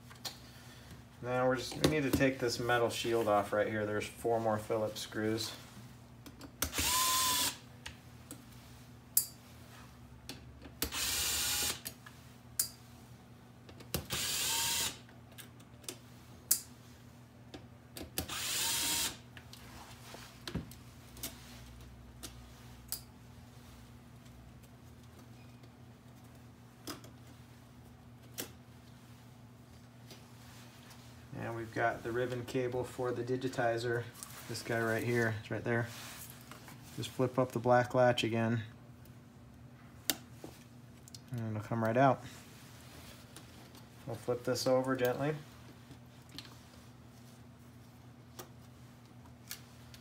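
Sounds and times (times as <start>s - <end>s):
power screwdriver whining: 6.6s - 7.6s, 10.9s - 11.8s, 14.1s - 15.0s, 18.2s - 19.2s.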